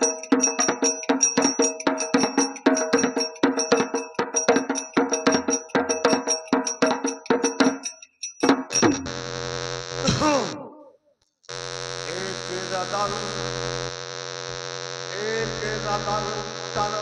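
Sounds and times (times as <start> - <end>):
sharp percussion strikes: 0.0 - 9.2.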